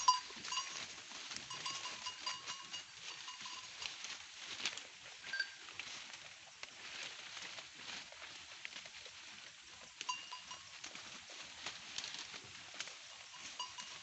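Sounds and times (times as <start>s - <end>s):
short ringing tones: 0.0s - 0.9s, 1.5s - 3.8s, 13.3s - 14.0s
rustles in undergrowth: 0.0s - 14.0s.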